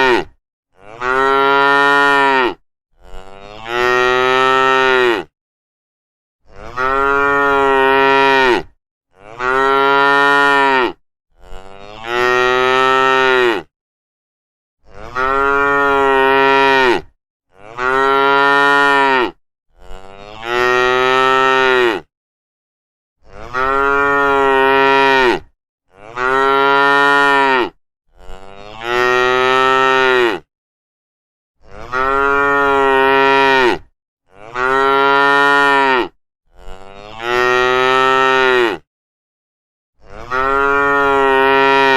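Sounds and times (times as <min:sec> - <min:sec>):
cows mooing: 0:00.0 - 0:05.3, 0:06.5 - 0:13.7, 0:14.9 - 0:22.1, 0:23.3 - 0:30.5, 0:31.6 - 0:38.8, 0:40.1 - 0:41.9.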